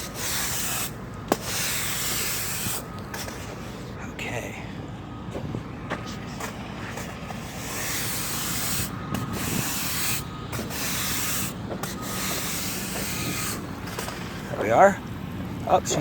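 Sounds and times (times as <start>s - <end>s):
stiff broom sweeping asphalt: 0.0s - 4.0s, 5.3s - 15.0s.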